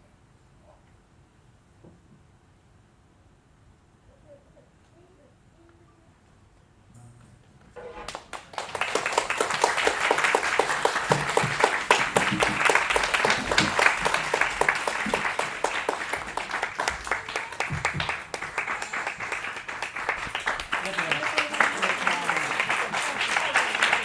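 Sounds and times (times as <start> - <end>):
audience applauding: 7.9 - 24.0.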